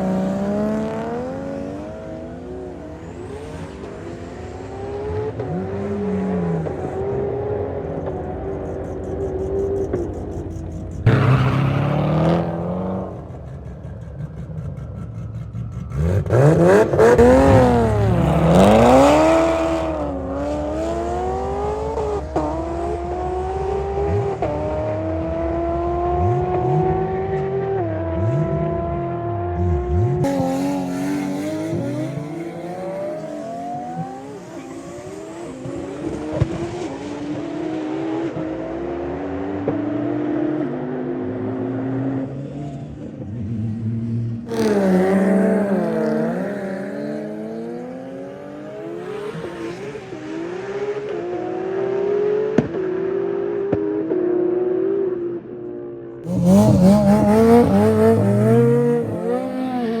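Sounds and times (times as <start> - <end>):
car engines accelerating: 0.0 - 60.0.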